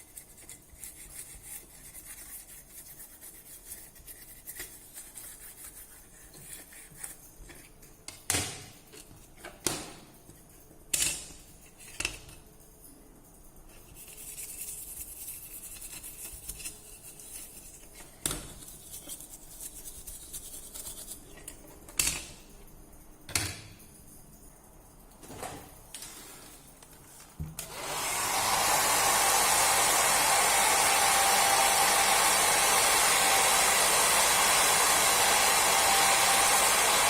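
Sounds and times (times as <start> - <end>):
tools clicking and tapping: 6.1 - 12.6, 15.6 - 19.3, 20.3 - 24.2.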